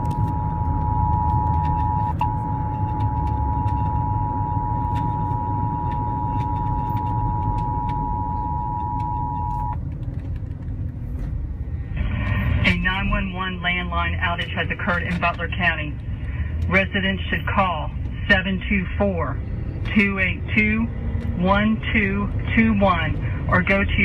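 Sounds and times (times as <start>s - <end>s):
two-note alarm tone: 0.0s - 9.8s
low rumble: 0.0s - 24.0s.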